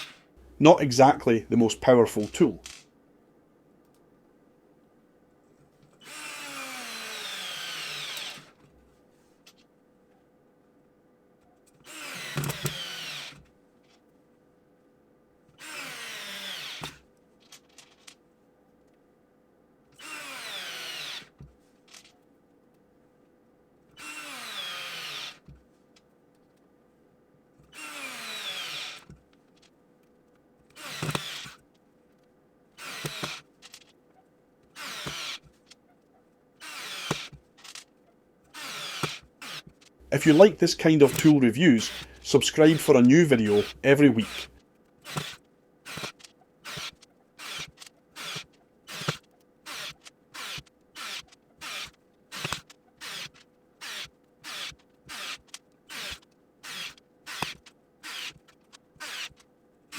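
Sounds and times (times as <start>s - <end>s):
electric screwdriver motor whine: 6.0s - 8.5s, 11.9s - 13.4s, 15.6s - 17.0s, 20.0s - 21.3s, 24.0s - 25.4s, 27.8s - 29.1s, 30.8s - 31.6s, 32.8s - 33.4s, 34.8s - 35.4s, 36.6s - 37.3s, 38.6s - 58.4s
small clicks: 43.6s - 59.5s.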